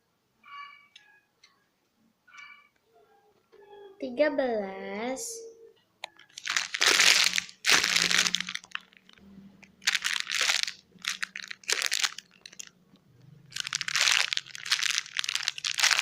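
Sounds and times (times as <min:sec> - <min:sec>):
crinkling plastic toy squeezed: 0:06.1 - 0:12.7, 0:13.5 - 0:16.0.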